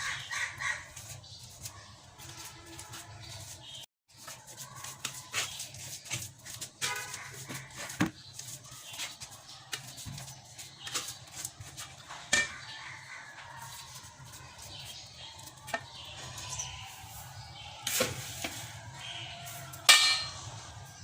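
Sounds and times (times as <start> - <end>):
kitchen utensils clinking: 12.3 - 12.6, 19.9 - 20.6.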